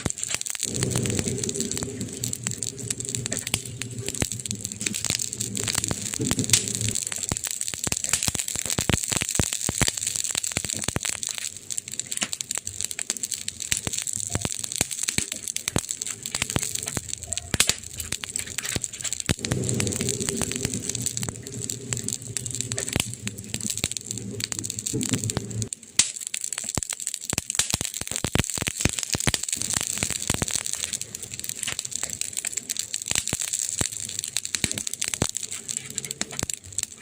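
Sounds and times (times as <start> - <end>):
wood fire crackling: 0.0 - 37.0
low rumble: 0.6 - 7.4, 17.8 - 25.7.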